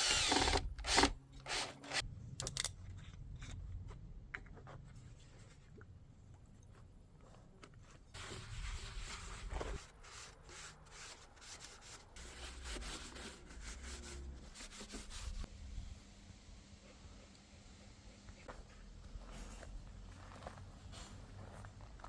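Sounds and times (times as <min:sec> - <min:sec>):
hand sanding wood: 0:08.2 - 0:15.5.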